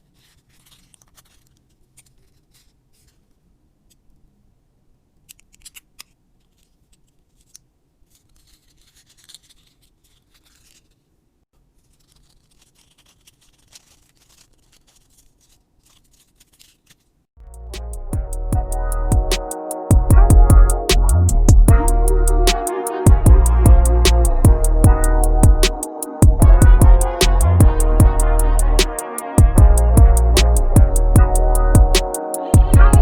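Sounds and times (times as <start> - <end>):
rustling craft materials: 0.0 - 4.3, 5.2 - 17.3.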